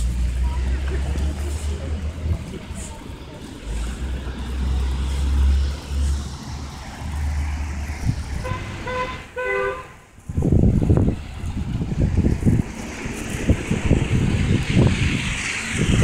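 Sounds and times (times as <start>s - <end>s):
loud rushing noise: 0.0s - 9.4s, 10.0s - 16.0s
street traffic rumble: 0.0s - 16.0s
car horn toots: 8.4s - 10.0s.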